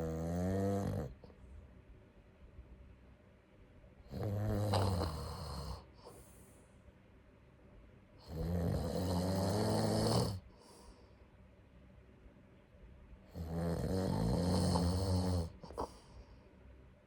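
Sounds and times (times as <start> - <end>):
person snoring: 0.0 - 1.2, 4.1 - 6.2, 8.2 - 10.8, 13.3 - 16.0.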